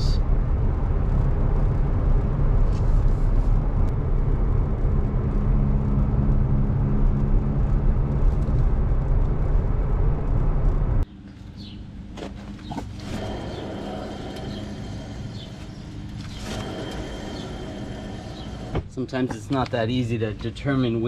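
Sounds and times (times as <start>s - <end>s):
road and tyre noise: 0.0s - 21.0s
wheel bearing humming: 10.2s - 19.7s.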